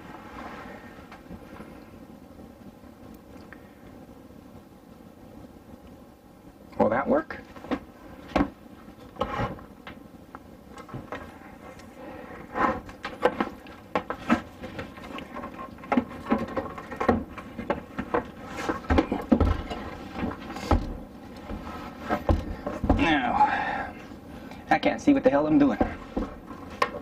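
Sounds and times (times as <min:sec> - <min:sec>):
dull thumps: 0:12.6 - 0:23.4, 0:25.6 - 0:27.0.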